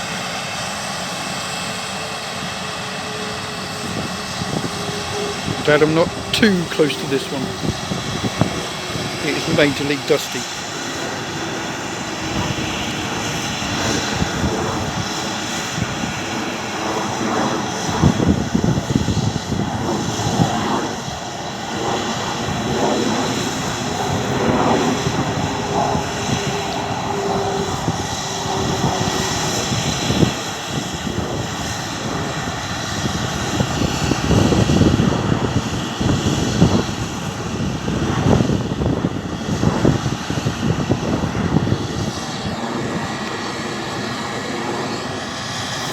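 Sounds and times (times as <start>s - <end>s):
combine harvester running: 0.0s - 30.9s, 40.6s - 45.9s.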